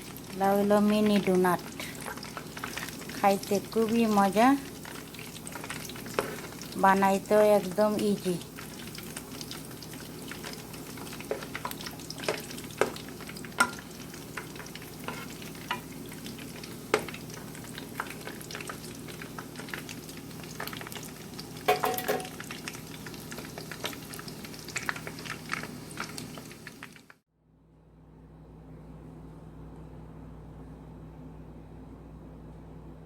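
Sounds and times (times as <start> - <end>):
doughnuts sizzling in hot oil: 0.0 - 27.2
utensil clinking in pan: 21.7 - 22.4.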